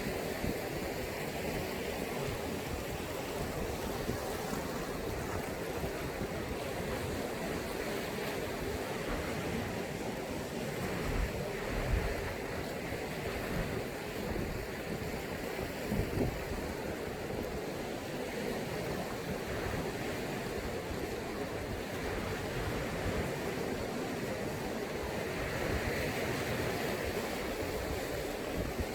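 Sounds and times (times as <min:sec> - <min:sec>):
sea waves surf rushing: 0:00.0 - 0:28.9.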